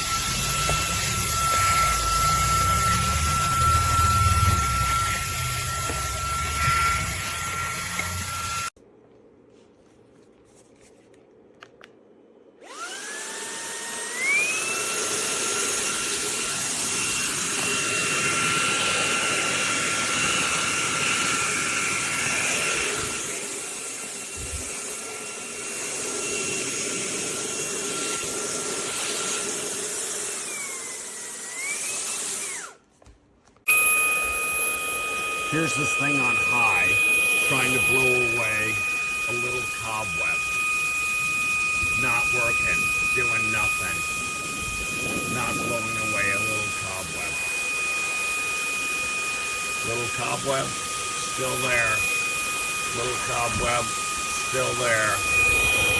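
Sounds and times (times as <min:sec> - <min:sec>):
handheld vacuum motor whining: 0:00.0 - 0:08.8, 0:12.6 - 0:33.0, 0:33.6 - 0:55.9.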